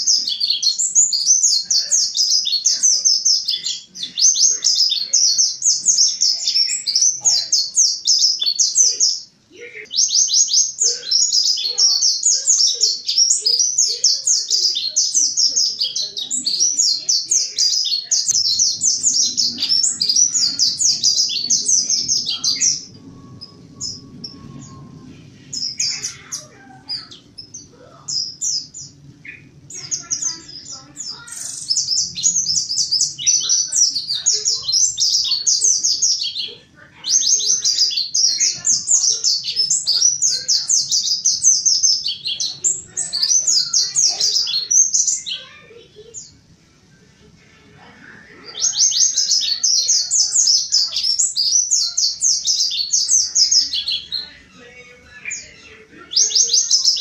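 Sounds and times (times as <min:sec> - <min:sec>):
bird chirps: 0:00.0 - 0:45.5
bird singing chattering song: 0:00.0 - 0:46.5, 0:48.4 - 0:57.0.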